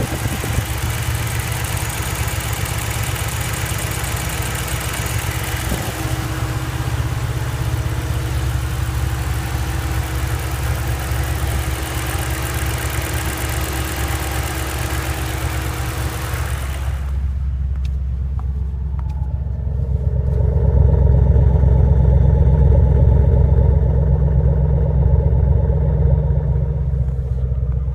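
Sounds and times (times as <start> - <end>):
car engine running: 0.0 - 27.9
deep engine rumble: 0.0 - 27.9.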